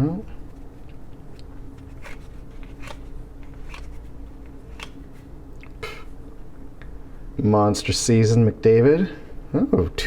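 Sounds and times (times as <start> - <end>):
faint low hum: 0.0 - 10.0
cards flicking: 0.8 - 5.3.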